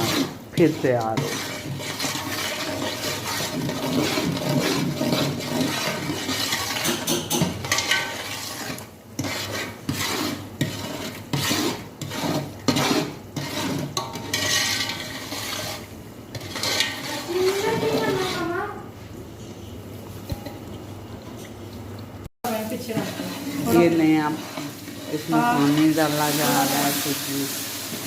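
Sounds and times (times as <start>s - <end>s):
spoon scraping a pan: 0.0s - 18.8s, 22.5s - 28.0s.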